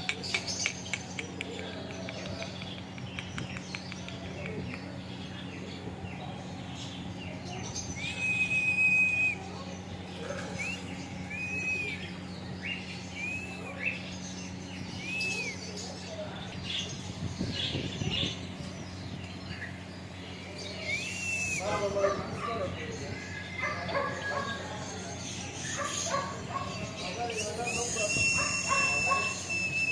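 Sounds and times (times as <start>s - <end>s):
parrot whistling: 27.4s - 29.9s.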